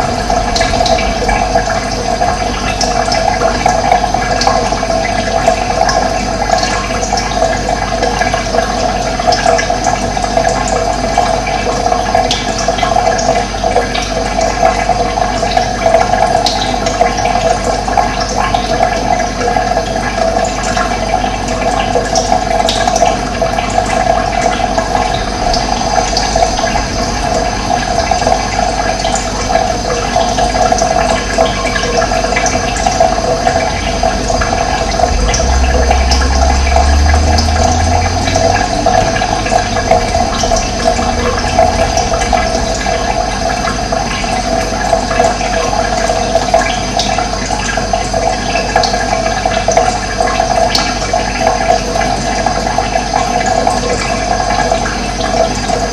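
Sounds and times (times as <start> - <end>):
low rumble: 0.0 - 6.4, 23.7 - 46.5
water rushing: 0.0 - 55.9.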